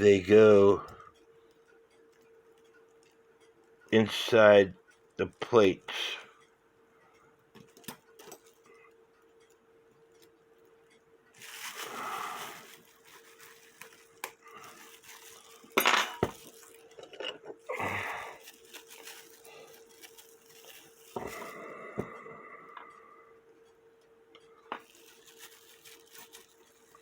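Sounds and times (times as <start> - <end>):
faint steady hum: 0.0 - 27.0
soft rustles: 11.4 - 17.0.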